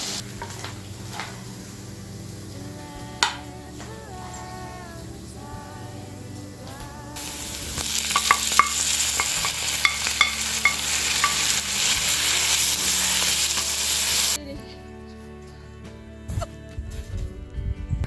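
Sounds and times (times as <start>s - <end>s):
food sizzling in hot oil: 0.0s - 5.7s, 7.2s - 14.4s.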